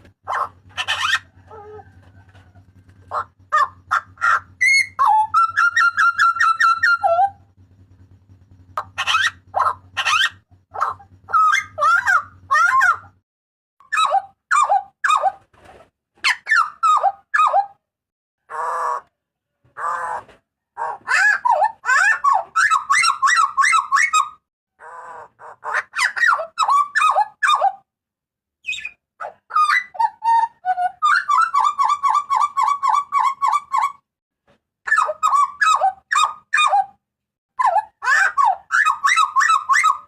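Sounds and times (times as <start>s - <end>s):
bird whistling calls: 3.1s - 7.5s.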